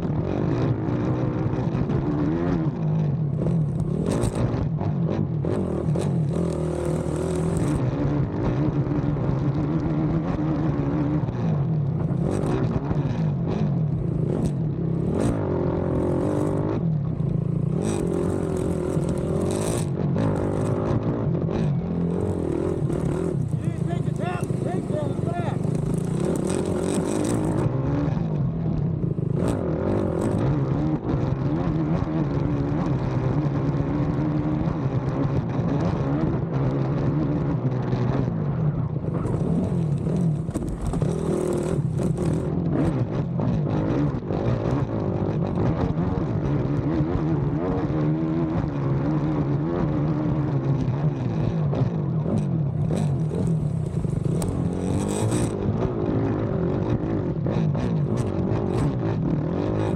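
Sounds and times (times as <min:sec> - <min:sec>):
quad engine revving: 0:05.4 - 0:11.4, 0:12.0 - 0:28.3, 0:29.0 - 0:34.5, 0:39.0 - 0:46.4, 0:52.2 - 0:59.9.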